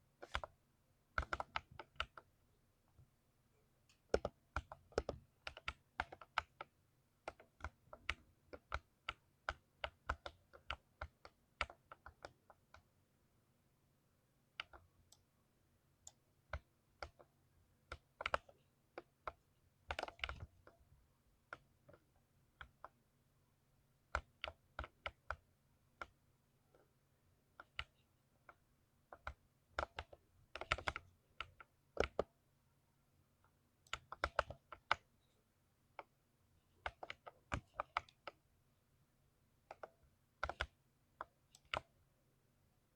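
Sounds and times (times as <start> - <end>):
mechanical keyboard typing: 1.2 - 2.3, 4.0 - 12.9, 17.9 - 20.7, 29.1 - 32.3, 33.8 - 35.1, 36.8 - 38.4, 39.7 - 42.0.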